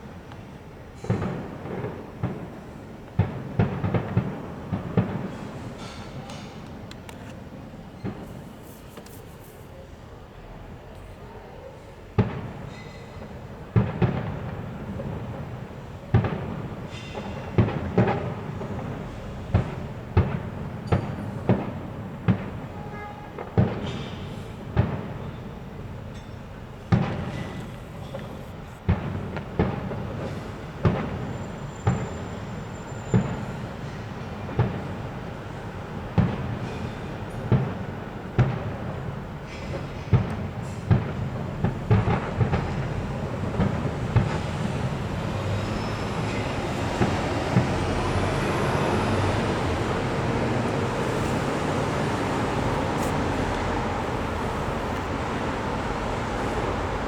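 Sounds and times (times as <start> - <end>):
fireworks bursting: 0.8 - 9.8, 12.2 - 22.8, 23.4 - 57.0
echoing rumble: 41.7 - 57.0.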